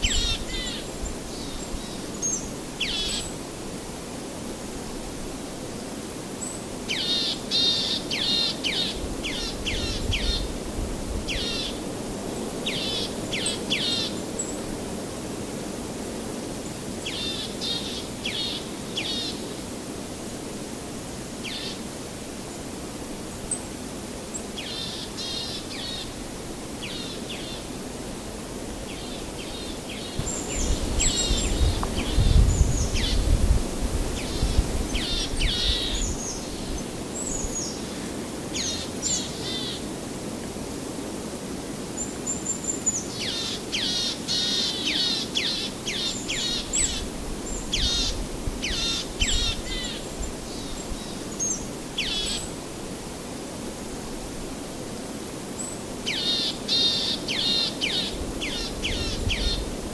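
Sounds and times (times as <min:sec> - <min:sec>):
outdoor background hiss: 0:00.0 - 0:59.9
small birds chirping: 0:28.9 - 0:33.3.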